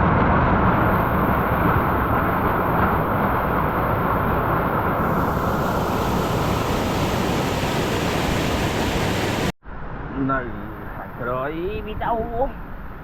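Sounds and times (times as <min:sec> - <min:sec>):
waterfall rushing: 0:00.8 - 0:09.5.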